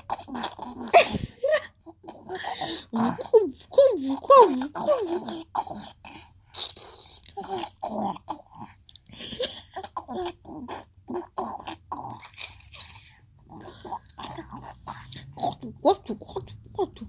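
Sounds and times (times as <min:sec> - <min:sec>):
baby making vocal noises: 0:02.2 - 0:05.7, 0:07.3 - 0:08.6.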